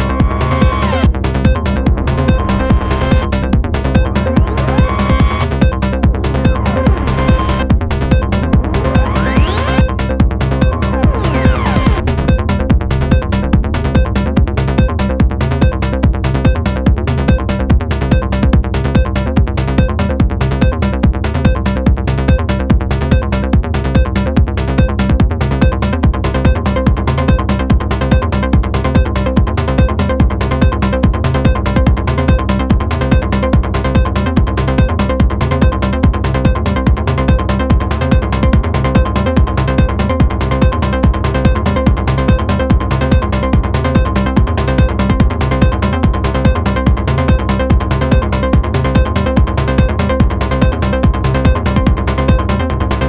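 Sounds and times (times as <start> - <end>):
high held synth note: 0.0 - 13.6
drum machine beat with hi-hats: 0.0 - 52.7
synth bass line: 0.0 - 53.0.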